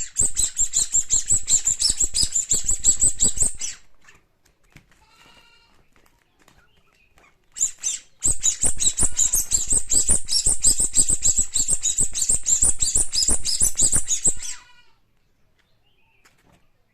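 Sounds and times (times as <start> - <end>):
squeaky toy squeaking: 0.0 - 3.8, 7.6 - 14.7.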